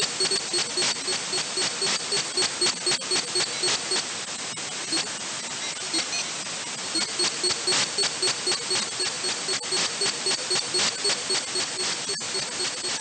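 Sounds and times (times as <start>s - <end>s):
short digital beeping pulses: 0.0s - 4.0s, 7.0s - 13.0s
radio static hiss: 0.0s - 13.0s.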